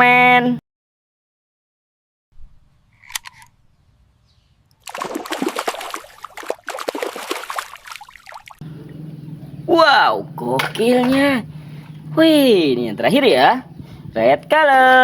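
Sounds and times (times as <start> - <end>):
water splashing and trickling: 4.7 - 13.4.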